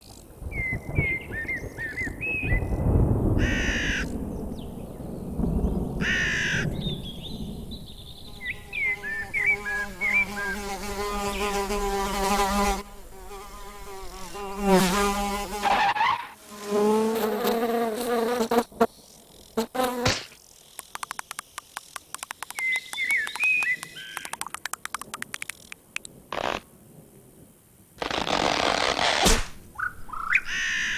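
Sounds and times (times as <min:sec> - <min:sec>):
cartoon insect buzzing: 0:08.4 - 0:18.7, 0:19.5 - 0:22.4, 0:28.0 - 0:30.9
quick clicks: 0:20.1 - 0:26.6
high squeaky chirps: 0:20.8 - 0:25.8, 0:28.0 - 0:30.9.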